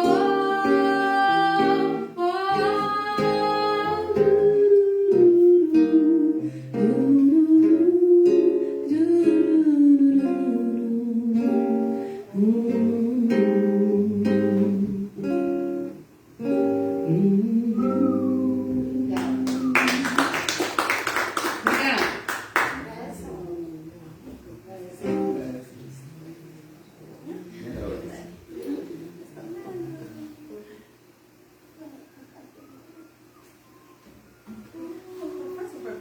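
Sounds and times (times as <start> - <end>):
person singing slow melody: 0.0 - 15.9, 16.8 - 20.1, 32.6 - 35.8
acoustic guitar chords: 0.0 - 20.5
hand clapping: 19.1 - 22.9.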